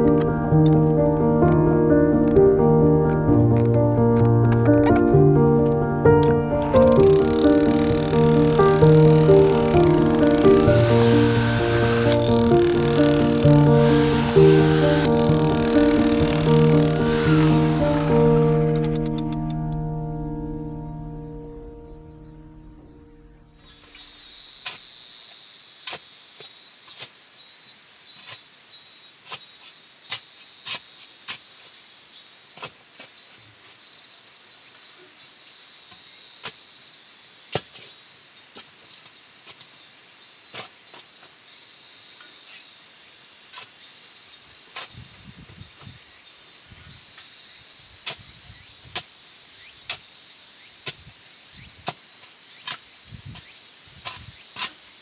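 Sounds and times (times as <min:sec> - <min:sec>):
crickets chirping: 0:00.0 - 0:26.7.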